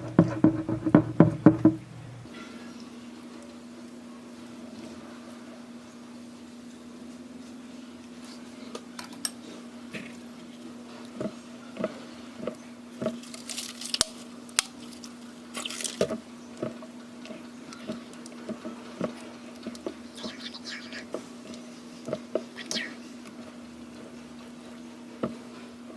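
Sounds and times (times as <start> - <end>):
steady low hum: 0.0 - 25.9
slime squelching: 9.9 - 25.7.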